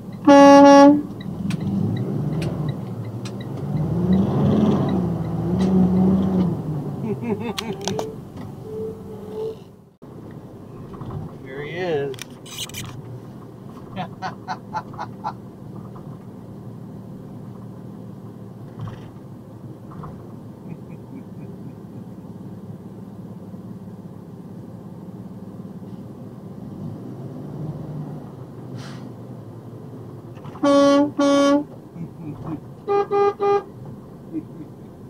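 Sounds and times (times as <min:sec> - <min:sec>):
truck cab and road noise: 0:00.0 - 0:35.0
truck air horn blasts: 0:00.2 - 0:01.1, 0:08.0 - 0:09.7, 0:30.5 - 0:31.7, 0:32.8 - 0:33.8.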